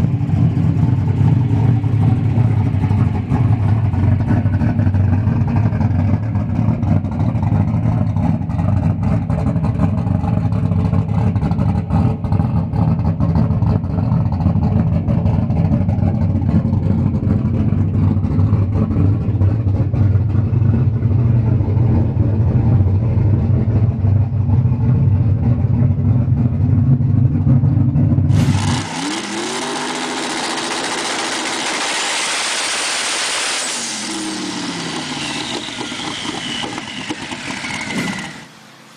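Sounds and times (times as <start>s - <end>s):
car engine idling: 0.0s - 33.3s
hissy engine pitch gliding down: 28.3s - 38.9s.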